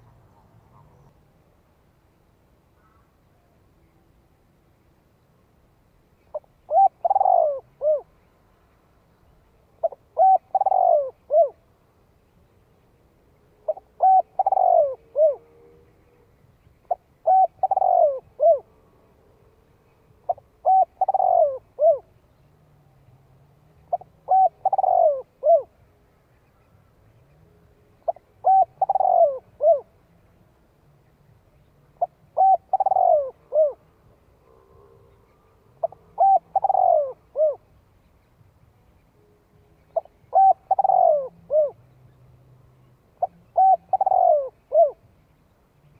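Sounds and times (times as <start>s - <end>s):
dove cooing: 6.3s - 8.1s, 9.8s - 11.6s, 13.6s - 16.3s, 16.9s - 18.8s, 20.2s - 22.1s, 23.9s - 25.8s, 28.0s - 30.0s, 32.0s - 37.7s, 39.9s - 41.8s, 43.2s - 45.0s.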